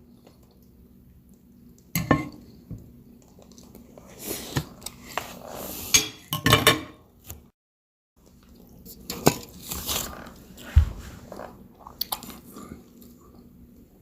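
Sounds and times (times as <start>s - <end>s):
dishes and cutlery clinking: 2.0s - 2.4s, 6.0s - 7.0s.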